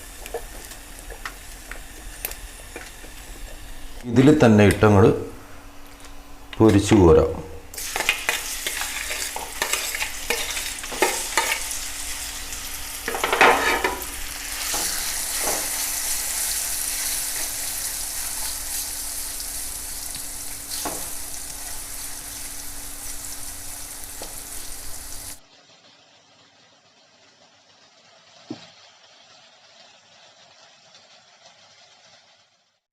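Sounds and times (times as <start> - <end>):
prawns deep-frying sizzle: 0.0 - 4.1, 7.6 - 32.9
stirring scrapes and knocks: 8.0 - 11.6.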